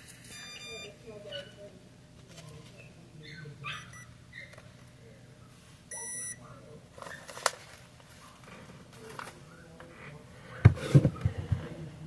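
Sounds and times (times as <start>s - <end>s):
electronic beep: 0.3s - 1.0s, 5.9s - 6.4s.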